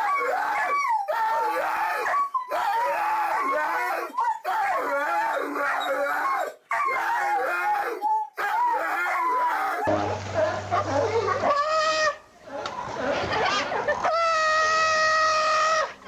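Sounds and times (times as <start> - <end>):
dog howling: 0.0 - 16.0.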